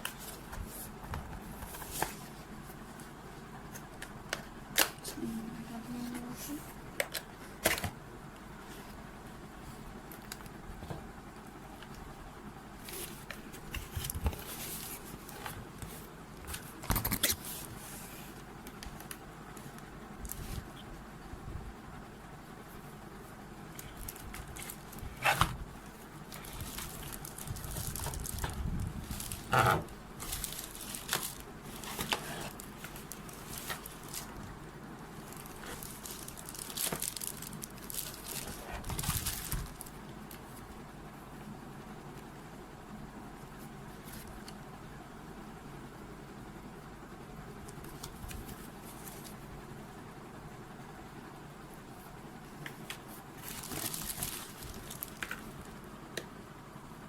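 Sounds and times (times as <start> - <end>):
hands unwrapping packaging: 26.3 - 34.5, 35.1 - 40.4, 52.6 - 55.7.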